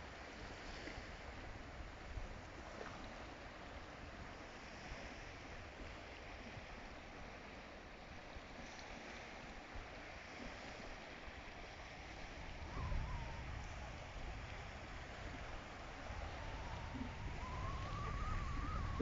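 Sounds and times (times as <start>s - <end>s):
wind noise: 12.0s - 19.0s
wind gust buffeting microphone: 12.3s - 19.0s.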